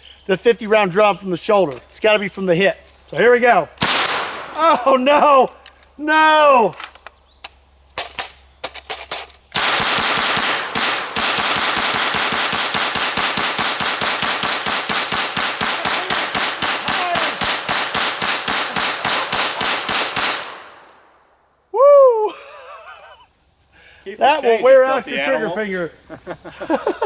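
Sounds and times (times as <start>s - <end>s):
gunshots: 3.8s - 4.9s, 9.6s - 21.1s.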